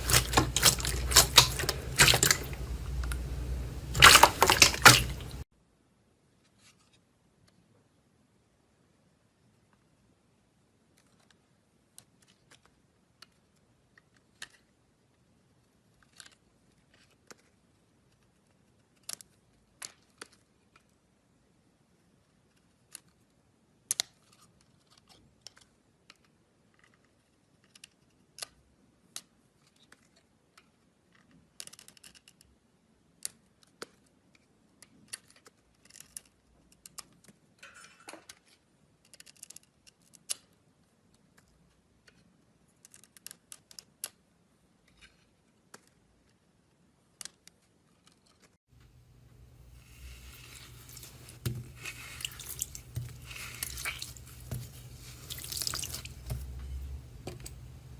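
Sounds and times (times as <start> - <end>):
steady low hum: 0.0 - 5.4
sharp irregular clicks and snips: 23.9 - 32.5, 39.0 - 44.2, 47.1 - 48.6.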